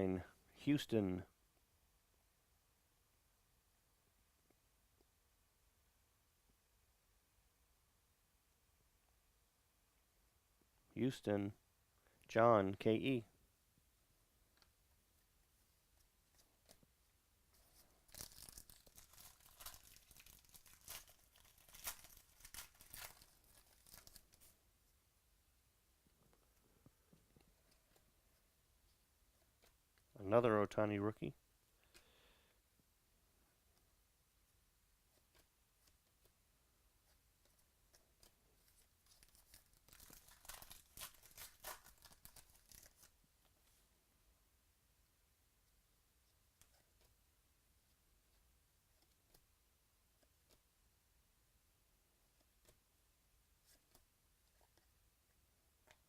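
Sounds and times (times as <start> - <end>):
foil wrapper tearing and crinkling: 18.1 - 24.5, 39.0 - 43.1.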